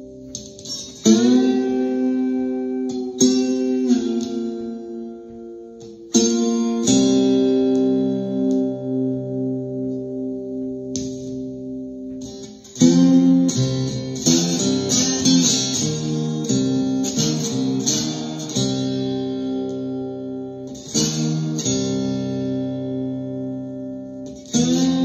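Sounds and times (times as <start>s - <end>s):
acoustic guitar picking and strumming: 0.0s - 25.0s.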